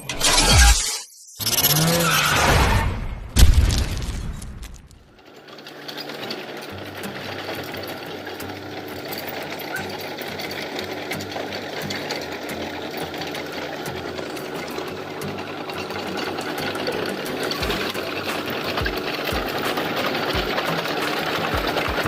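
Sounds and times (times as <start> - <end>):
diesel engine clattering: 5.0 - 22.0.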